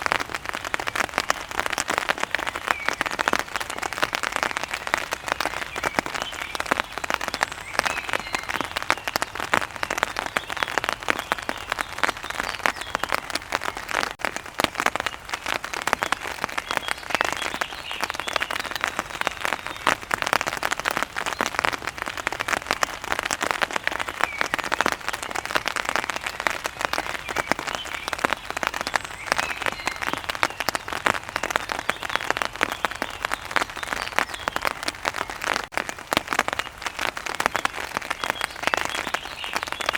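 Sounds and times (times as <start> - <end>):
rain pattering on umbrella: 0.0 - 39.9.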